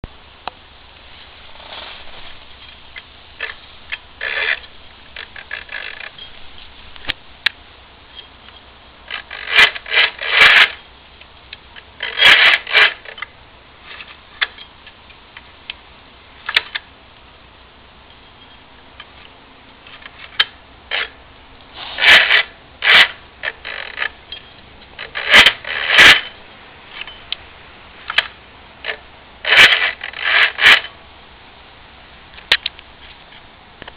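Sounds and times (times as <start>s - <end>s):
scooter scraping and creaking: 1.0s - 7.2s, 8.1s - 10.9s, 11.7s - 15.5s, 18.1s - 27.3s, 28.0s - 31.0s, 32.4s - 33.9s.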